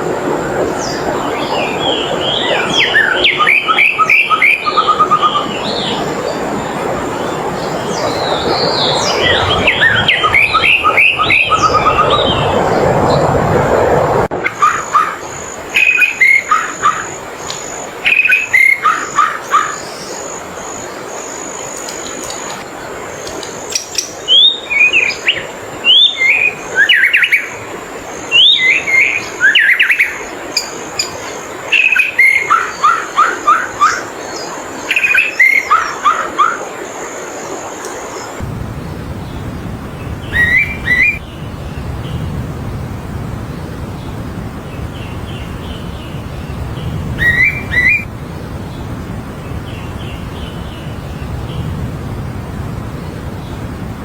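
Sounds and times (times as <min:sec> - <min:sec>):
songbird singing: 0:00.0 - 0:13.5, 0:14.4 - 0:54.0
steady high-pitched tone: 0:36.8 - 0:43.6
low rumble: 0:38.4 - 0:54.0.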